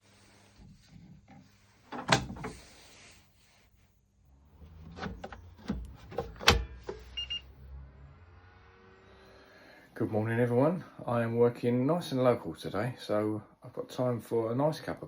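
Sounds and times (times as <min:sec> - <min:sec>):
handling knocks and clunks: 0:00.8 - 0:02.6, 0:04.6 - 0:07.1.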